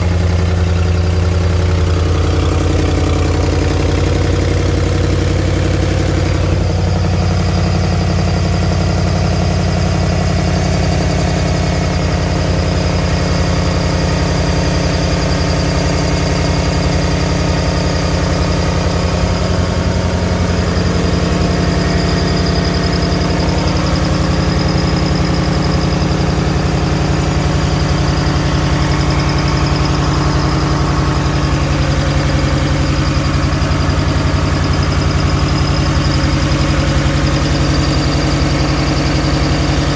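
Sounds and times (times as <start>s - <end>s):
car engine idling: 0.0s - 39.9s
loud engine ticking: 0.0s - 39.9s.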